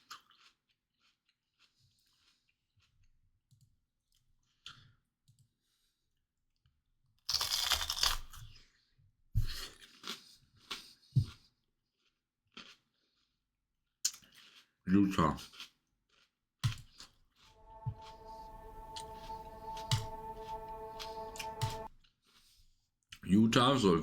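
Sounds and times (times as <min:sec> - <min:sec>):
person crunching a pepper: 0:07.3 - 0:08.6, 0:14.1 - 0:14.8, 0:15.4 - 0:16.4.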